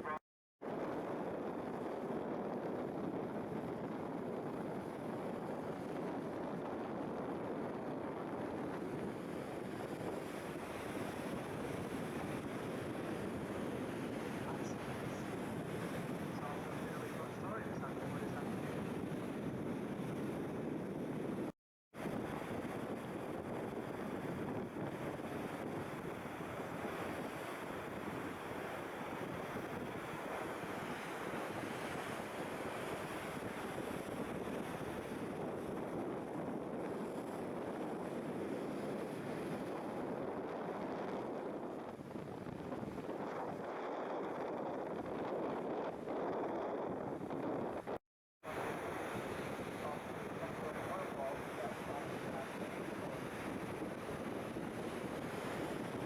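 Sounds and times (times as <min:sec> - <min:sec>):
wind buffeting microphone: 0:00.1 - 0:56.0
wind and water rushing: 0:48.4 - 0:56.0.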